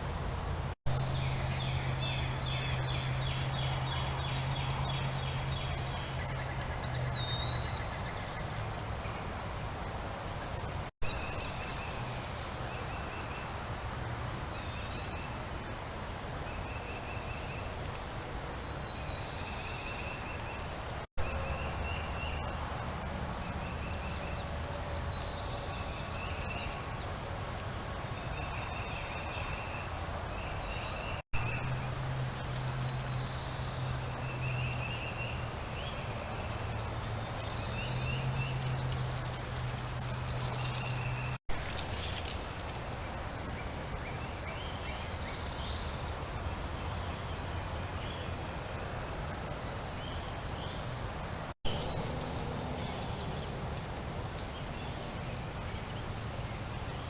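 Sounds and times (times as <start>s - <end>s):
birds singing and chirping: 0.9s - 9.4s, 16.5s - 27.2s, 28.0s - 46.1s.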